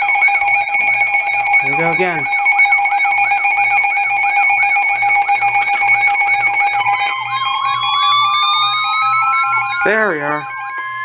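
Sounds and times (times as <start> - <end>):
steady alert tones: 1.5 - 2.4, 9.7 - 11.0
repeating warble: 1.6 - 2.3, 9.0 - 11.0.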